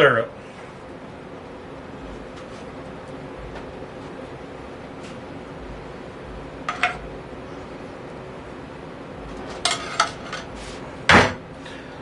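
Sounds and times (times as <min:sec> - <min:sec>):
steady low hum: 0:00.0 - 0:12.0
kitchenware clinks and knocks: 0:06.7 - 0:07.0, 0:09.6 - 0:10.5.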